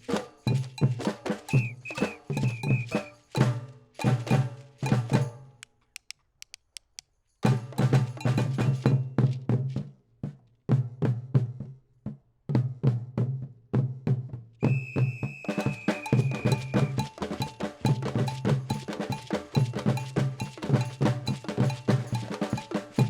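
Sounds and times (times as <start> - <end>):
percussion group drumming: 0.0 - 5.4, 7.4 - 9.7, 14.6 - 23.0
whistle note: 1.5 - 3.4, 14.6 - 23.0
sharp clicks: 5.6 - 7.1.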